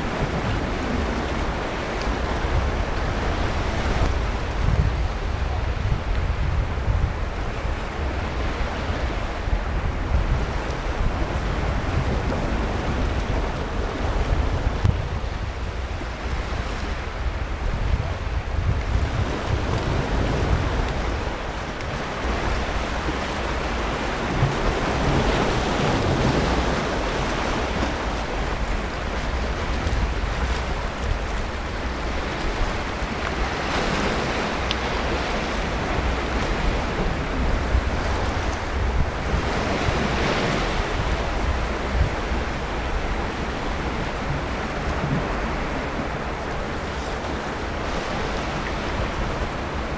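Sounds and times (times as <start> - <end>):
sea waves breaking on beach: 0.0 - 49.9
wind rumbling on microphone: 0.0 - 49.9.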